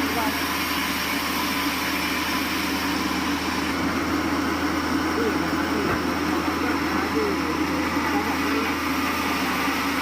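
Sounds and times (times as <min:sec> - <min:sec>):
sawmill machinery running: 0:00.0 - 0:10.0.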